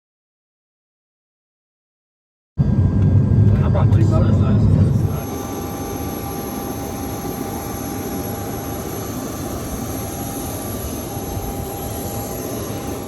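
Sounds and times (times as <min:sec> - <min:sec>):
faint steady whine: 0:02.6 - 0:13.0
jet aircraft rushing noise: 0:02.6 - 0:13.0.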